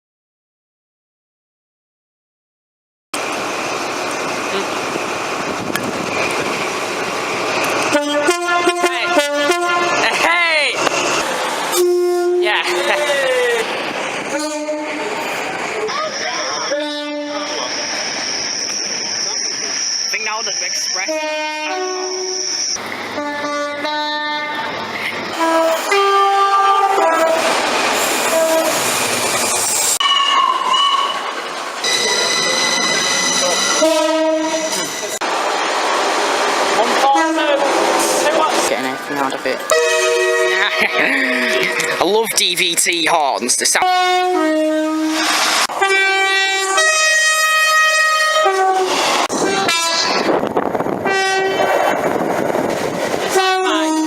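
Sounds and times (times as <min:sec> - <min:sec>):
train rushing past: 0:03.2 - 0:54.0
two-tone train horn blasts: 0:07.9 - 0:10.1, 0:11.7 - 0:12.9, 0:14.3 - 0:15.1, 0:16.6 - 0:17.6, 0:21.0 - 0:24.7, 0:25.4 - 0:27.5, 0:28.2 - 0:28.9, 0:30.0 - 0:31.2, 0:31.8 - 0:34.9, 0:39.7 - 0:41.9, 0:43.8 - 0:50.3, 0:51.0 - 0:51.7, 0:53.3 - 0:54.0.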